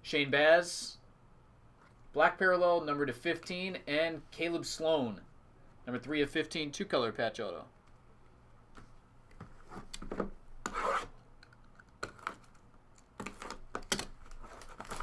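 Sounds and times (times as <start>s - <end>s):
cards sliding and scraping: 10.7s - 11.2s.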